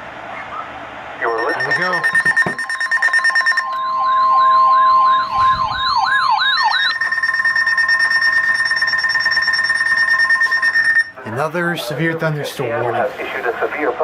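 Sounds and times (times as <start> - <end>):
warbling siren tone: 1.2 - 11.2
steady high alert tone: 1.2 - 12.3.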